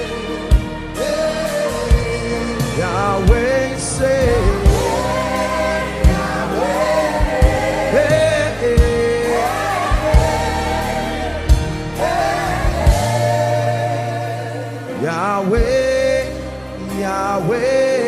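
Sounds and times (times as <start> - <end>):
band playing: 0.0 - 18.0
voices singing wordless notes: 0.0 - 18.0.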